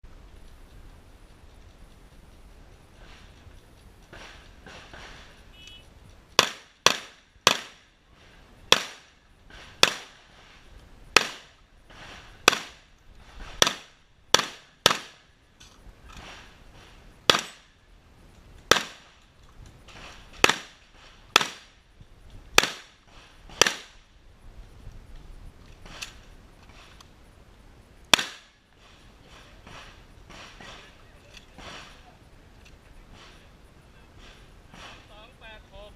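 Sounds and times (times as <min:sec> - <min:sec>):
shotgun shots with ringing tail: 0:06.4 - 0:07.9, 0:08.7 - 0:09.2, 0:12.4 - 0:12.9, 0:13.6 - 0:15.2, 0:17.3 - 0:17.7, 0:18.7 - 0:19.1.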